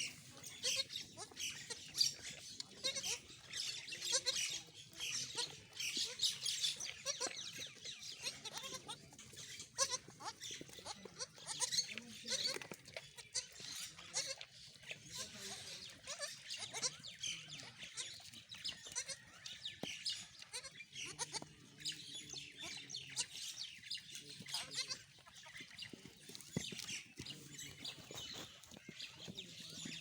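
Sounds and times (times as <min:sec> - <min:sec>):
goats bleating: 0:02.7 - 0:04.6, 0:08.1 - 0:09.0, 0:09.6 - 0:12.4, 0:13.2 - 0:14.5, 0:16.0 - 0:17.1, 0:18.8 - 0:19.4, 0:20.4 - 0:21.6, 0:24.5 - 0:25.4.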